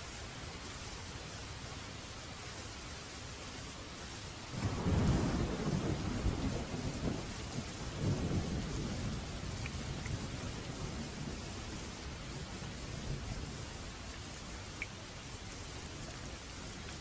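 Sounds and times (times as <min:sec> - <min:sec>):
steady rain falling: 0:00.0 - 0:17.0
thunder rumbling: 0:04.5 - 0:13.8.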